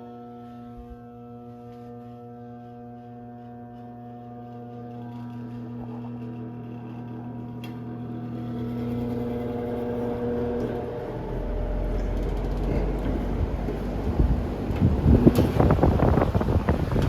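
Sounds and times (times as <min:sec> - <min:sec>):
box fan motor humming: 0:00.0 - 0:17.0
airflow buffeting microphone: 0:08.4 - 0:17.0
rush of moving air: 0:12.7 - 0:17.0.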